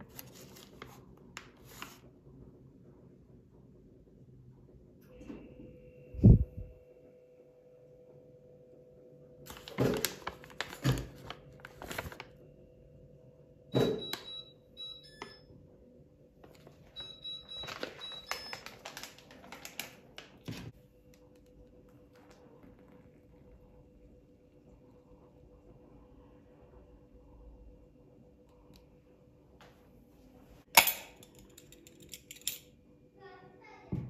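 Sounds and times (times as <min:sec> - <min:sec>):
steady low hum: 0:02.2 - 0:09.4.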